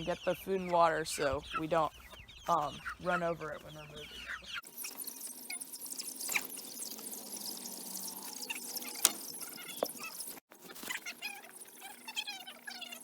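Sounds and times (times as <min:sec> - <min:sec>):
chickens peeping: 0:00.0 - 0:13.0.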